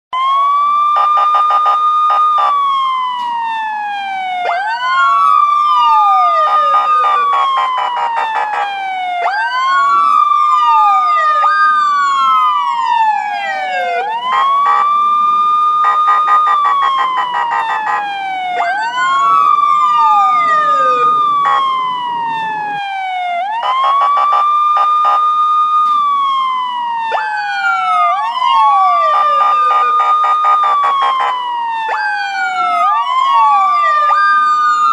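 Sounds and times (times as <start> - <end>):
police siren wailing: 0.1 - 34.9
second siren wailing: 0.1 - 34.9.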